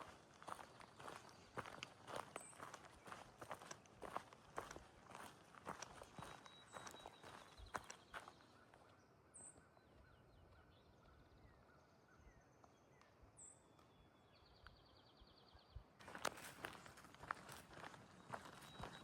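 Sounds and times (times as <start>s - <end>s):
footsteps on a trail: 0.0s - 8.8s, 16.0s - 19.0s
birds chirping and trilling: 5.6s - 8.8s.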